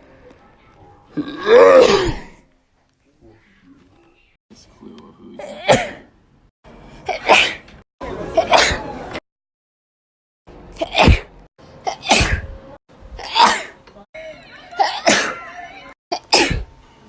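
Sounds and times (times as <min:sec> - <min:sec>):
person sneezing: 0:07.1 - 0:07.7, 0:08.4 - 0:08.9, 0:10.8 - 0:12.5, 0:13.2 - 0:13.8, 0:14.8 - 0:15.4, 0:16.1 - 0:16.7.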